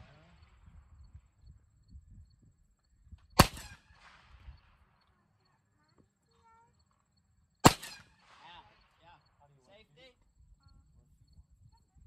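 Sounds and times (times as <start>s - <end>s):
rifle shots with echo: 3.4s - 5.0s, 7.6s - 9.3s.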